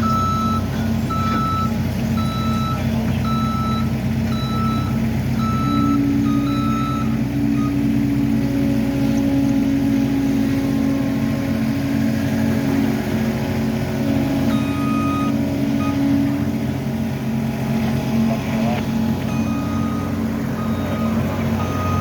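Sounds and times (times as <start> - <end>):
reversing alarm beeping: 0.0 - 7.9, 14.5 - 16.3, 19.3 - 22.0
diesel machinery engine drone: 0.0 - 22.0.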